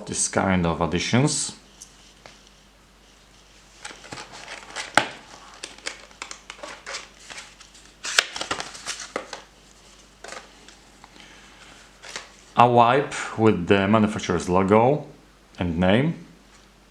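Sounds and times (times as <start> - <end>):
packaging crinkling: 3.6 - 12.5
packaging snaps: 3.8 - 9.5.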